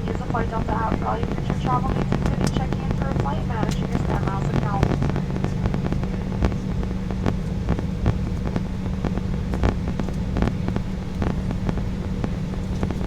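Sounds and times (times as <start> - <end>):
aircraft cabin rumble and hum: 0.0 - 13.0.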